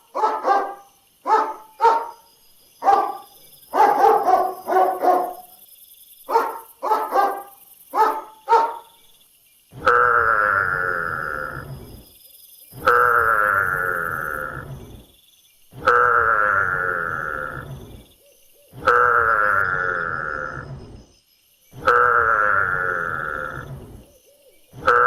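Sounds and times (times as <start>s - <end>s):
dog barking: 0.0s - 5.5s, 6.3s - 9.0s
animal bleating: 9.8s - 11.7s, 15.8s - 17.7s, 18.8s - 20.6s, 21.8s - 23.7s, 24.8s - 25.0s.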